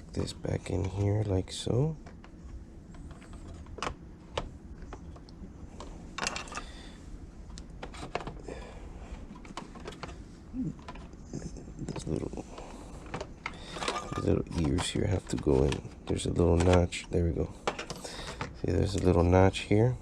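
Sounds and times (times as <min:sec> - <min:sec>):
steady low hum: 0:00.0 - 0:20.0
plastic parts clicking and tapping: 0:07.5 - 0:08.4, 0:10.8 - 0:11.2, 0:11.9 - 0:19.3.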